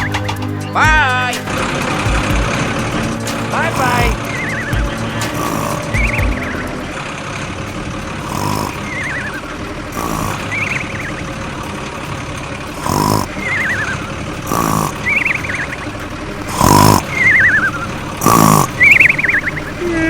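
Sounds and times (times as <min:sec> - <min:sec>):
toy motor hum: 0:00.0 - 0:20.0
warbling whistle tones: 0:02.6 - 0:11.8, 0:13.2 - 0:20.0.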